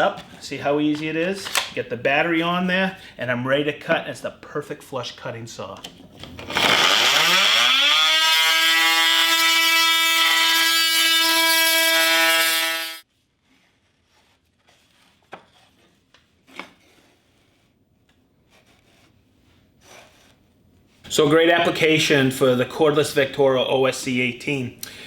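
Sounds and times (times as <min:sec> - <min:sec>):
oscillating multitool buzzing: 0:06.5 - 0:13.0.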